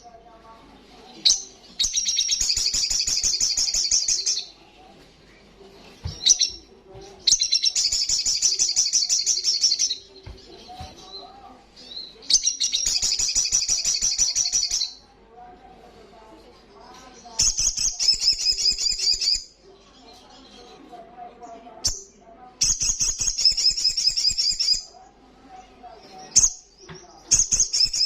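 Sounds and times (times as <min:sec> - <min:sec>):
bird singing rapid trills: 0:01.2 - 0:04.5, 0:07.2 - 0:10.1, 0:11.8 - 0:15.0, 0:17.4 - 0:19.5, 0:21.8 - 0:24.9, 0:26.3 - 0:28.0.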